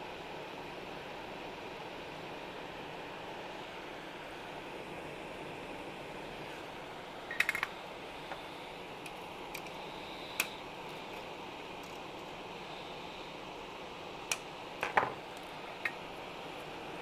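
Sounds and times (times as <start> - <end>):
background hiss: 0.0 - 17.0.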